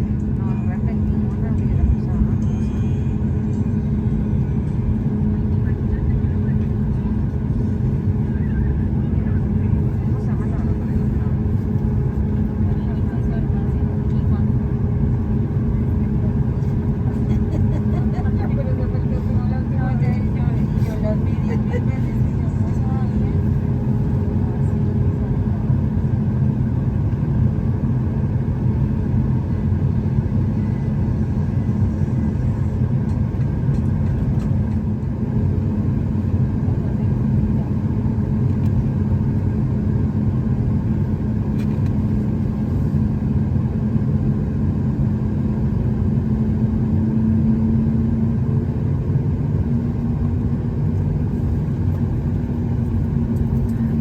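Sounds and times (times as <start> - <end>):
airplane cabin rumble: 0.0 - 54.0
low engine hum: 0.0 - 54.0.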